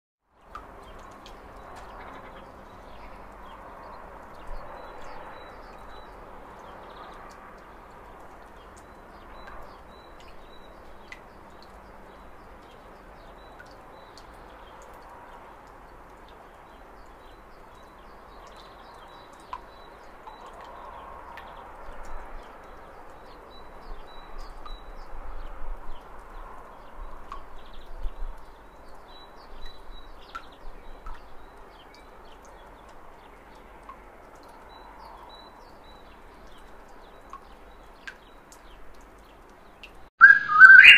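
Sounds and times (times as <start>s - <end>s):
outdoor background noise: 0.2s - 40.9s
high bird chirps: 40.2s - 40.9s.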